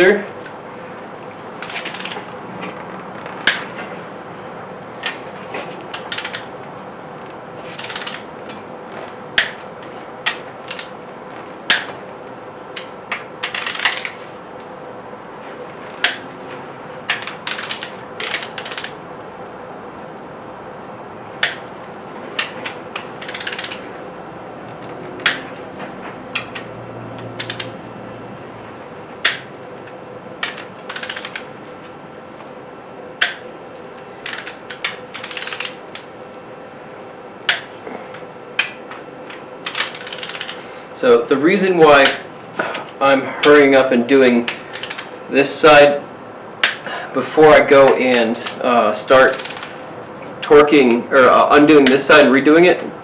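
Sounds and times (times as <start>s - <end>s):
faint steady hum: 0.0s - 53.0s
ratchet clicking: 1.6s - 2.2s, 5.9s - 6.5s, 7.8s - 8.3s, 10.2s - 10.9s, 12.8s - 14.2s, 17.1s - 19.0s, 22.4s - 23.8s, 27.2s - 27.8s, 30.4s - 31.5s, 34.2s - 35.8s, 39.6s - 40.6s, 44.5s - 45.1s, 49.2s - 49.8s
torque wrench sharp clicks: 1.6s - 2.2s, 5.9s - 6.5s, 7.8s - 8.2s, 17.1s - 19.0s, 22.4s - 23.8s, 27.3s - 27.7s, 30.4s - 31.5s, 34.2s - 35.8s, 39.6s - 40.6s, 44.5s - 45.1s, 49.2s - 49.8s.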